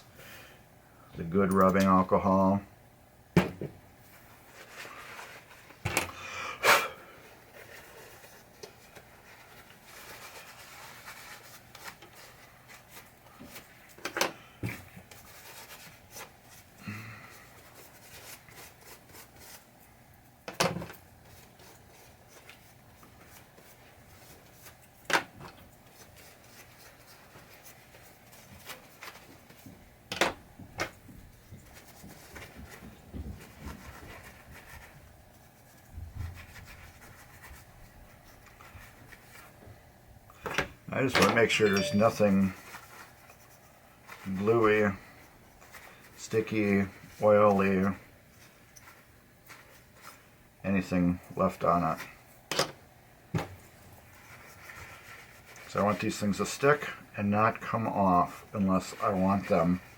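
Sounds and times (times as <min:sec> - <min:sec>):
cloth rubbing: 0:07.4 - 0:14.0, 0:41.0 - 0:52.1.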